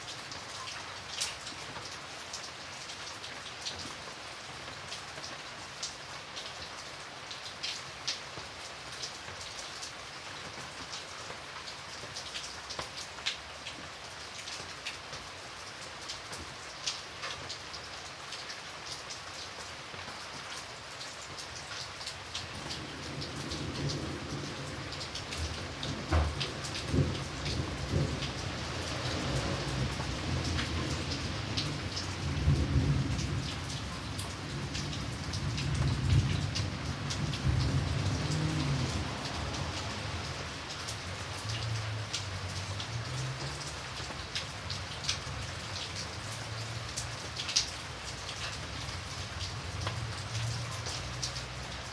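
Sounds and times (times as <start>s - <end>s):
light rain falling: 0.0s - 51.9s
distant thunder rumble: 22.6s - 40.7s.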